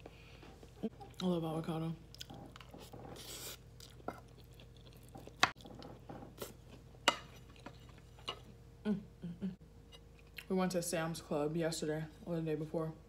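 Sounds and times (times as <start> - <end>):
person chewing food: 2.1 - 8.5.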